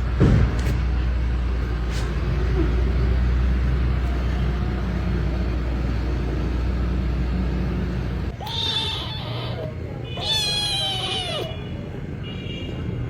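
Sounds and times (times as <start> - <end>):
kitten meowing: 8.4 - 11.7.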